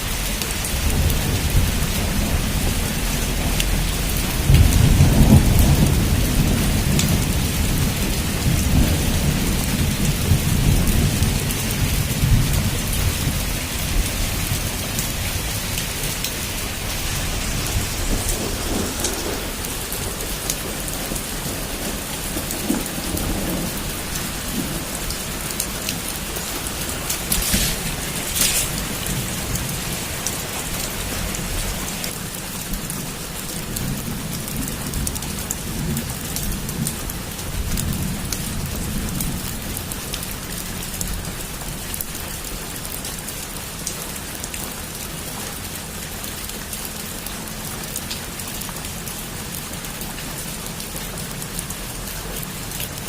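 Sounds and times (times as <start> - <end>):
heavy rain on a roof: 0.0 - 53.0
thunder rumbling: 0.1 - 40.4.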